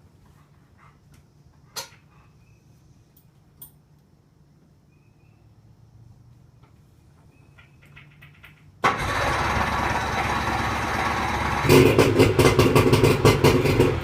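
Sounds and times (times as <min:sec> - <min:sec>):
boat motor starting and running: 0:08.9 - 0:14.0.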